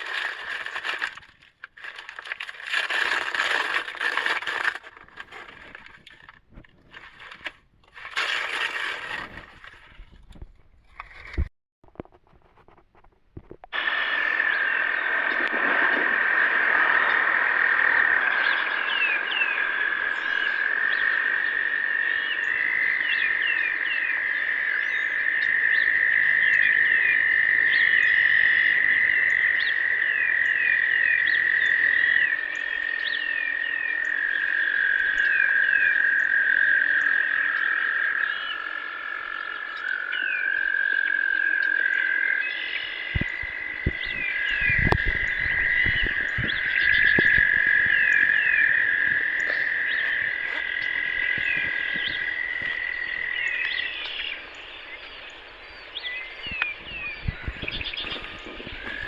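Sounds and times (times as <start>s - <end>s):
frog chorus trilling: 0.0s - 1.2s, 13.7s - 59.0s.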